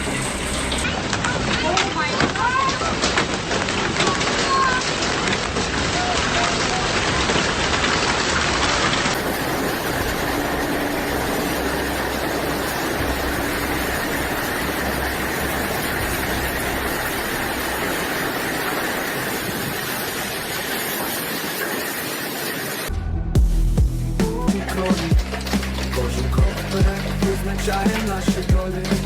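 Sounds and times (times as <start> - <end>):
heavy rain: 0.0 - 22.9, 23.5 - 29.0
wind roaring: 8.9 - 24.4.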